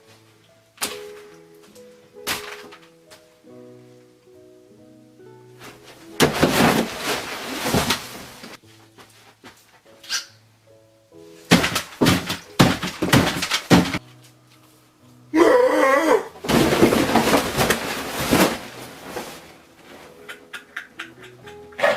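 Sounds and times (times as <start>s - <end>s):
background music with held notes: 0.0s - 21.9s
dense crunching noise: 5.7s - 8.6s, 16.4s - 20.2s
loud noisy thunks and crashes: 6.2s - 8.6s, 11.5s - 14.0s, 16.4s - 19.2s
wavering cry: 15.3s - 16.4s.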